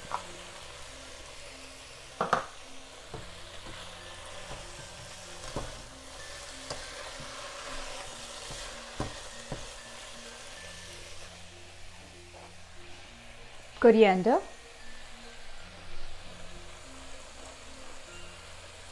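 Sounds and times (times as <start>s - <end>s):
vegetables sizzling in a pan: 0.0s - 18.9s
spoon knocking against pan: 2.2s - 5.9s, 8.4s - 9.8s.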